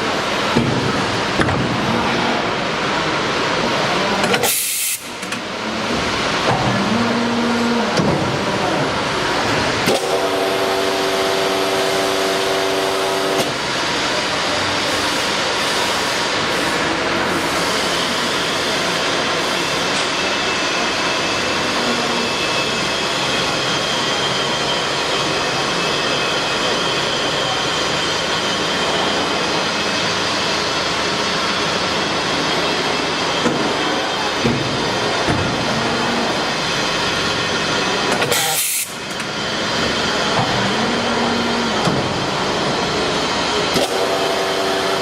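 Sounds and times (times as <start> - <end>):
injection moulding machine running: 0.0 - 45.0
sharp air hiss: 4.4 - 5.2, 38.3 - 39.1.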